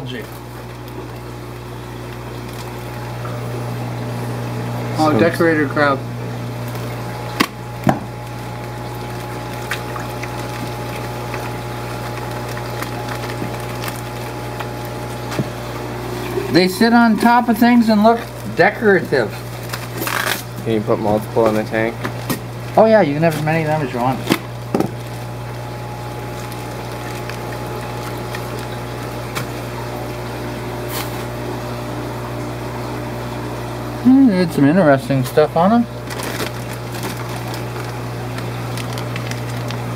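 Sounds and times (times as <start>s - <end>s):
aquarium pumps humming: 0.0s - 39.9s
water circulating: 0.0s - 39.9s.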